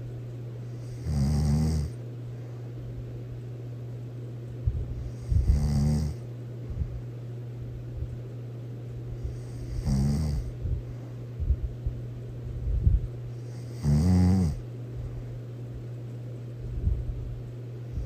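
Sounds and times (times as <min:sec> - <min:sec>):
steady low hum: 0:00.0 - 0:18.0
loud snoring: 0:00.8 - 0:02.0, 0:05.2 - 0:06.2, 0:09.3 - 0:10.5, 0:13.5 - 0:14.6.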